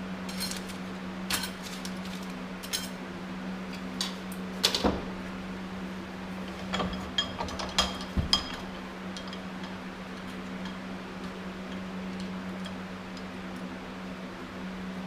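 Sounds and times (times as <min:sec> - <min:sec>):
steady low hum: 0:00.0 - 0:15.0
metal parts clinking: 0:00.3 - 0:03.0.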